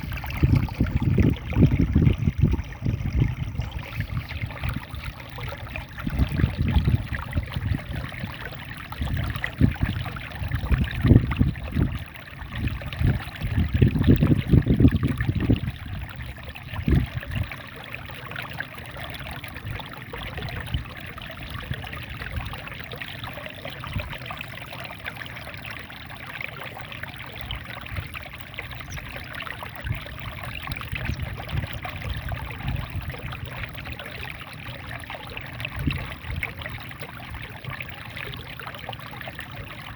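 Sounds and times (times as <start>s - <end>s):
small waterfall splashing: 0.0s - 2.6s.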